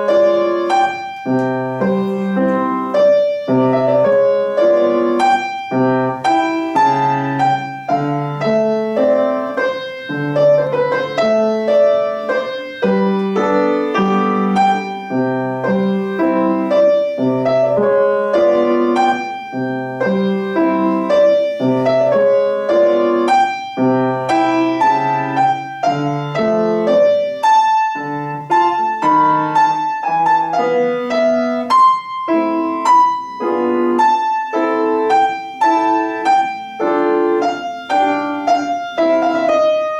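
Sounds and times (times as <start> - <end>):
solo piano playing: 0.0 - 39.9.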